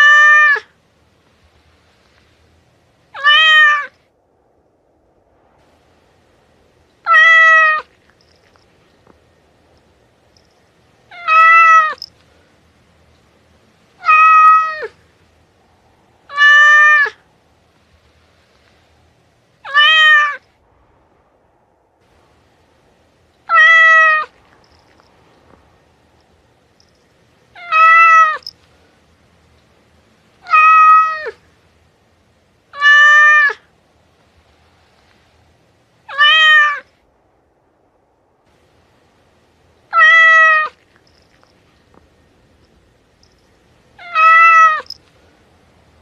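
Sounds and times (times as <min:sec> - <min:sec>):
cat meowing: 0:00.0 - 0:00.7, 0:03.2 - 0:04.0, 0:07.0 - 0:08.0, 0:11.1 - 0:12.1, 0:14.0 - 0:15.0, 0:16.3 - 0:17.2, 0:19.6 - 0:20.4, 0:23.5 - 0:24.4, 0:27.6 - 0:28.5, 0:30.4 - 0:31.4, 0:32.8 - 0:33.6, 0:36.1 - 0:36.9, 0:39.9 - 0:40.8, 0:44.0 - 0:45.0.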